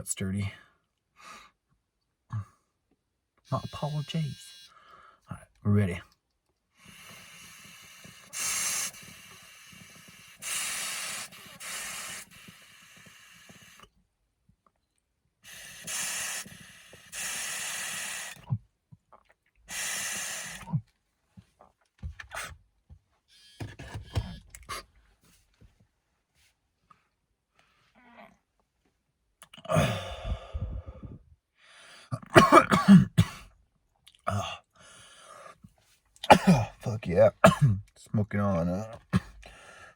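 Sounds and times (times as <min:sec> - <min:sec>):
person exhaling vapour: 0:06.8 - 0:13.9, 0:15.4 - 0:18.6, 0:19.7 - 0:20.8, 0:29.6 - 0:31.2.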